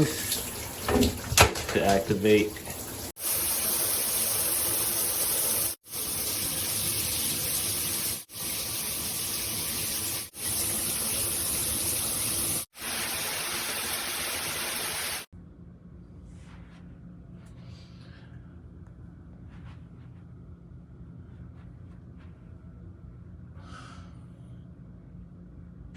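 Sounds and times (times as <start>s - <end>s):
water spraying from shower head: 0.0s - 15.3s.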